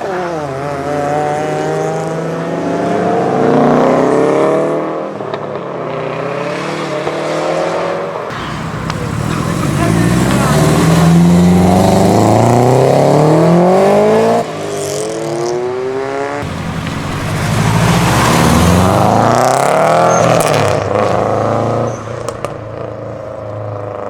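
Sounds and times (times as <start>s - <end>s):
car engine accelerating hard: 6.1s - 24.0s.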